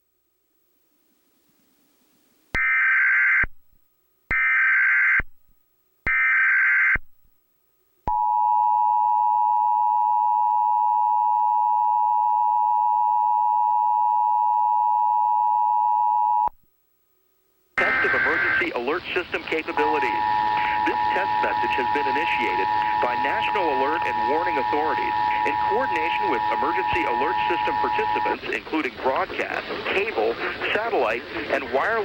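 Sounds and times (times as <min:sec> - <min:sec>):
screeching digital data bursts: 0:17.8 - 0:28.4
two-tone alert signal: 0:19.6 - 0:28.4.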